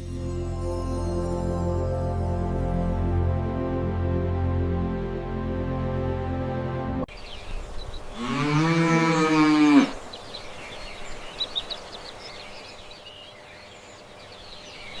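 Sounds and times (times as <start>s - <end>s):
cow mooing: 8.1s - 10.0s.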